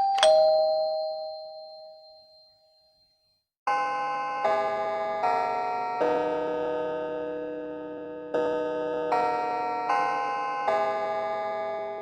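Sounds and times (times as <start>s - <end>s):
two-note ding-dong chime: 0.0s - 3.2s.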